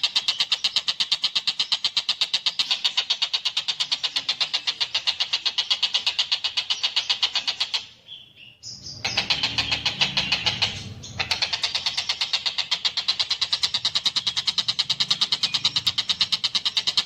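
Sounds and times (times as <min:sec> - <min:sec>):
kingfisher calling: 0:09.0 - 0:17.0.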